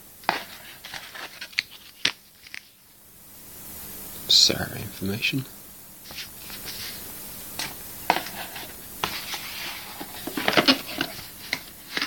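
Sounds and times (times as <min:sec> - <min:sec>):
paper and cardboard rustling: 0:00.2 - 0:02.8, 0:06.1 - 0:07.0, 0:07.6 - 0:12.0.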